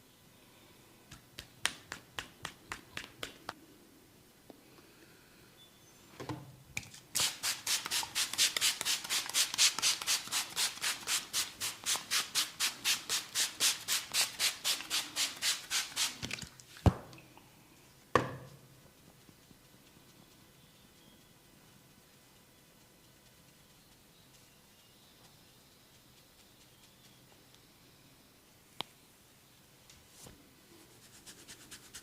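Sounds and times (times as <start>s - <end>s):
hands rubbing briskly: 7.2s - 16.3s, 30.9s - 32.0s.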